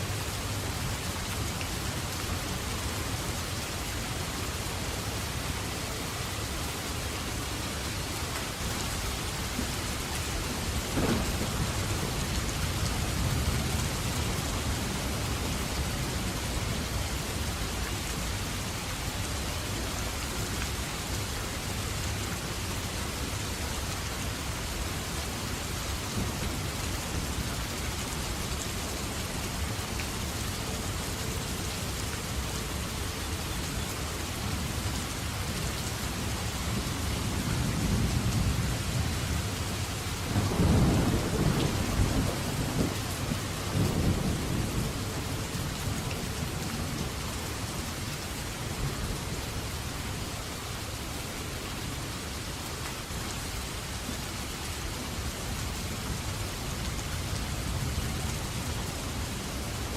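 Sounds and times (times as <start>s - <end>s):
heavy rainfall: 0.0s - 59.9s
thunder crack rumbling: 10.7s - 14.3s.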